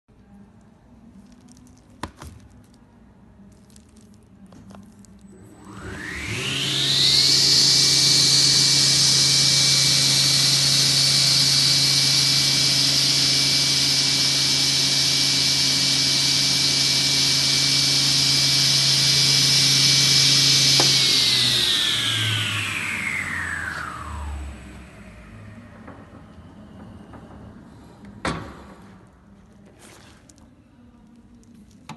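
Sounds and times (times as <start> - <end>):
table saw whirring: 5.3 - 28.3.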